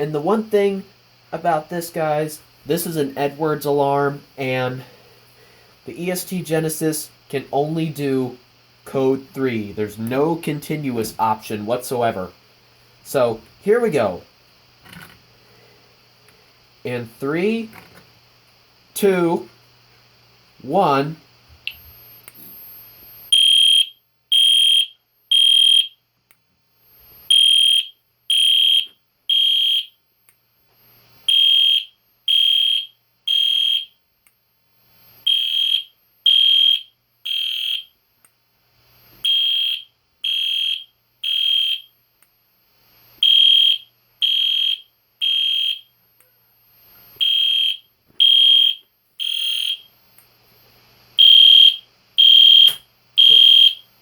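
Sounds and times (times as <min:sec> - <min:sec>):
fire alarm horn blasts: 0:23.3 - 0:26.0, 0:27.3 - 0:30.0, 0:31.3 - 0:34.0, 0:35.2 - 0:37.9, 0:39.2 - 0:41.9, 0:43.2 - 0:45.9, 0:47.2 - 0:49.9, 0:51.2 - 0:53.9.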